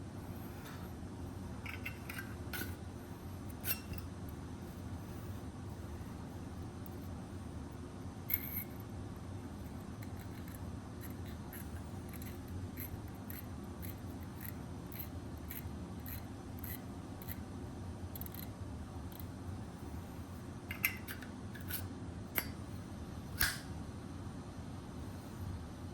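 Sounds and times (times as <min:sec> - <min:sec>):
lighter insert metal clicks: 0:23.4 - 0:23.7.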